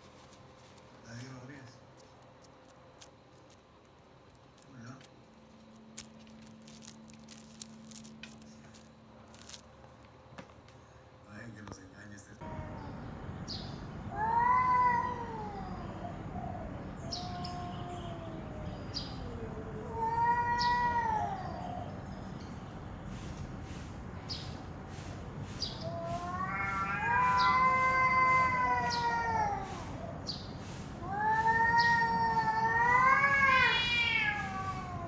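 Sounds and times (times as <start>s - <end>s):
cat yowling: 14.1s - 21.9s, 25.8s - 30.2s, 30.9s - 35.0s.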